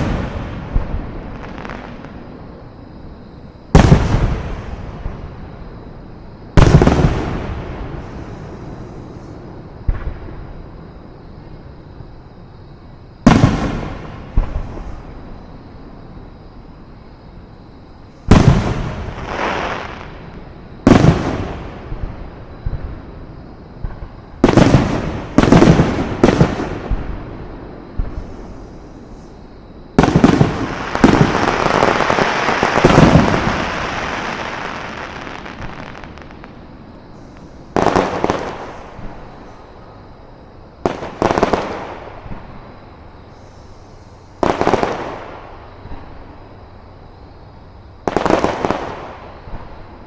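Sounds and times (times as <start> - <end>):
fireworks bangs: 0.0 - 2.2, 3.7 - 5.3, 6.6 - 9.1, 13.2 - 15.2, 18.2 - 20.2, 20.8 - 23.1, 23.8 - 29.3, 30.0 - 39.6, 40.8 - 42.6, 44.4 - 46.1, 48.0 - 49.7.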